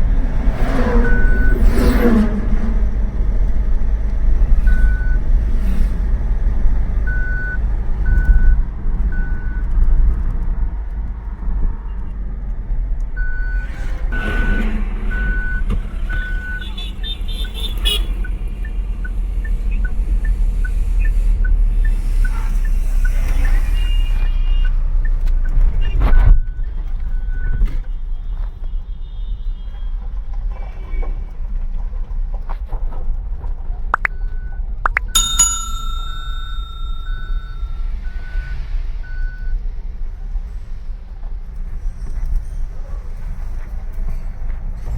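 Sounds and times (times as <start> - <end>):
diesel engine rumbling: 0.0 - 27.6
electronic warning chime beeping: 34.9 - 37.8.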